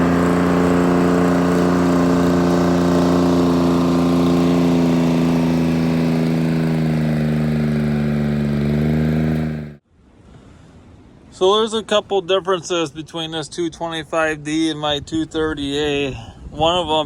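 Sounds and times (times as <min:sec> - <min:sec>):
diesel engine running: 0:00.0 - 0:09.8.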